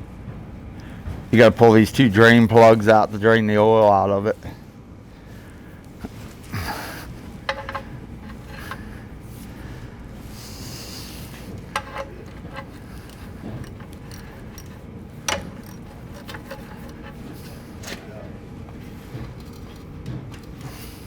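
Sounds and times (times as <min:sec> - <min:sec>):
hand tools clinking: 0:06.6 - 0:09.5, 0:11.0 - 0:18.2
metal scrape: 0:07.2 - 0:09.5, 0:10.8 - 0:18.2.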